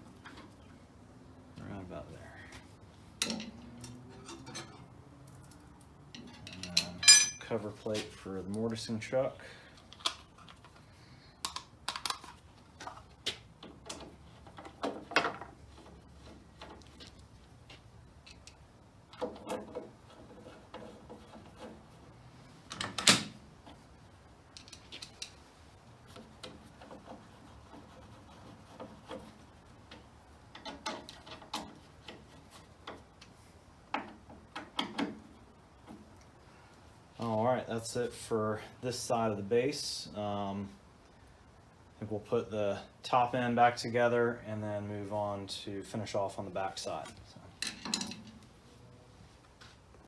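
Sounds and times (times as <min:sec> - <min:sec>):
metal parts and tools clinking: 0:03.2 - 0:07.5, 0:47.6 - 0:48.4.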